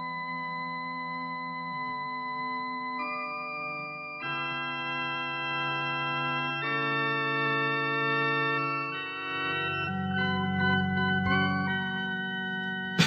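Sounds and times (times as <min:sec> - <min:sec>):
slow sustained instrumental chords: 0:08.2 - 0:13.0.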